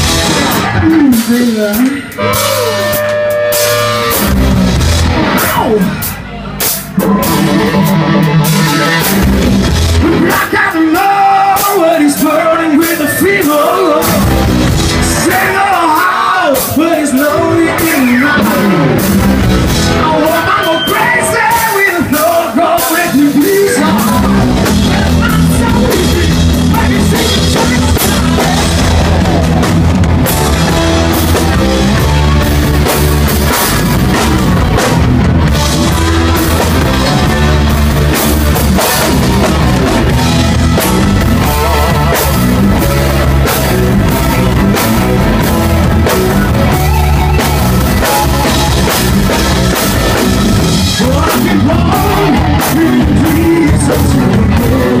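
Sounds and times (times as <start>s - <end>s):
drums: 0.0s - 55.0s
live rock band playing ballad: 0.0s - 55.0s
wavering lead melody: 23.8s - 53.6s.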